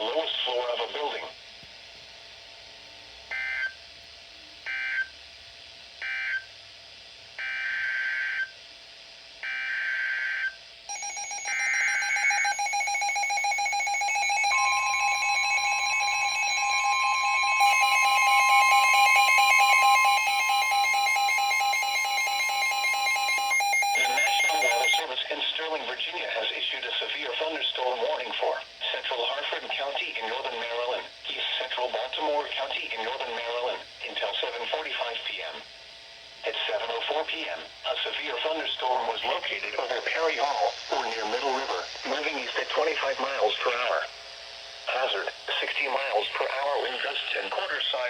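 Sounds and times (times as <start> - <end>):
higher alert tone: 10.9 - 25.0
screeching data bursts: 10.9 - 25.0
steady alert tone: 10.9 - 25.0.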